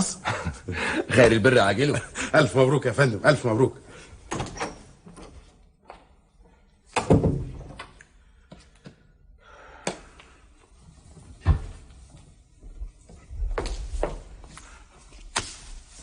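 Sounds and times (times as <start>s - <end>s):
door shutting: 4.3s - 5.5s.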